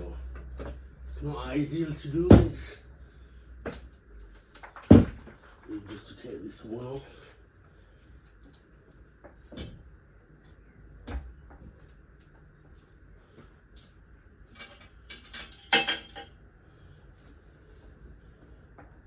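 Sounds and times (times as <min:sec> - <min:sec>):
metallic clinks and clatters: 0:14.5 - 0:16.3.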